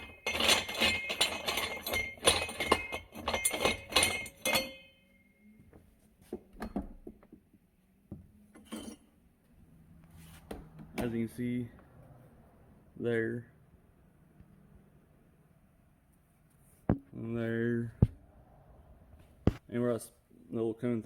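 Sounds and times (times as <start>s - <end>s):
steel parts clanking: 0.0s - 5.0s, 8.6s - 9.1s.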